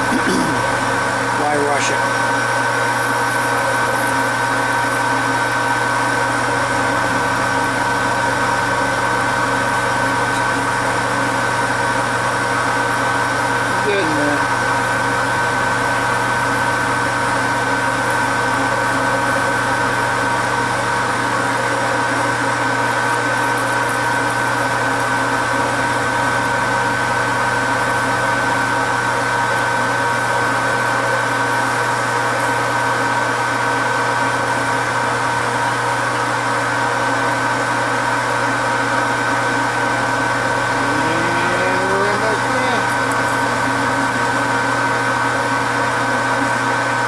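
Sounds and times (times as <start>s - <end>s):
metal lathe motor whining: 0.0s - 21.7s, 39.0s - 47.0s.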